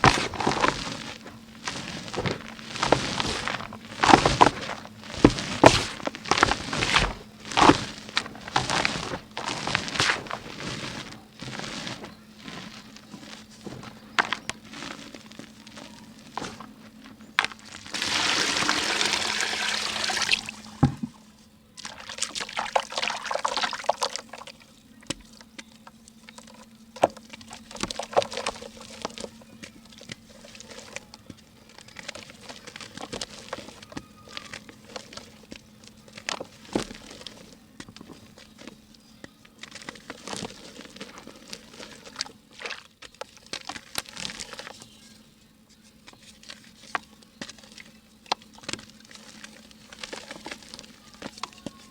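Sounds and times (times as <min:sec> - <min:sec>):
wet mud crackling and clicking: 0:00.0 - 0:18.1, 0:21.8 - 0:45.0, 0:45.8 - 0:51.9
water pouring: 0:18.0 - 0:20.8, 0:21.9 - 0:24.5.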